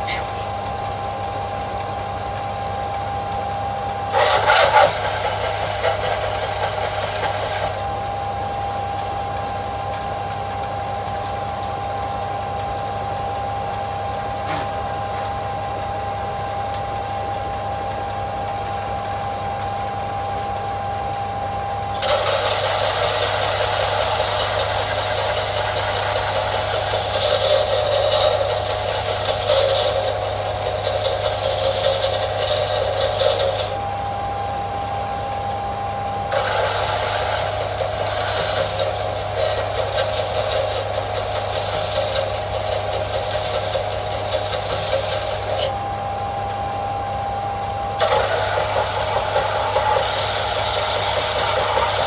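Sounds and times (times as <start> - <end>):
steel blade grinding on belt: 4.1 - 8.0, 22.0 - 33.9, 36.3 - 45.8, 48.0 - 52.0
belt sander humming: 4.1 - 8.1, 21.9 - 33.9, 36.2 - 45.9, 48.0 - 52.0.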